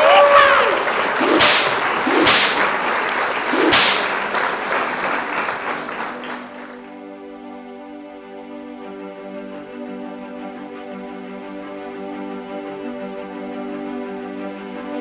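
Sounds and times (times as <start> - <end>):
quick swishes: 1.0 - 5.9
soft music: 7.0 - 15.0.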